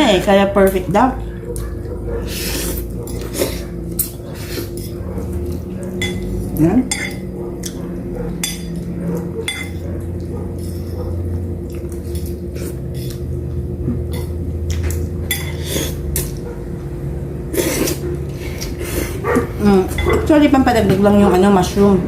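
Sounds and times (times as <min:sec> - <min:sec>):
low hum: 0:00.0 - 0:22.0
cutlery clinking on plates: 0:06.0 - 0:07.8, 0:08.4 - 0:09.8, 0:19.9 - 0:21.0.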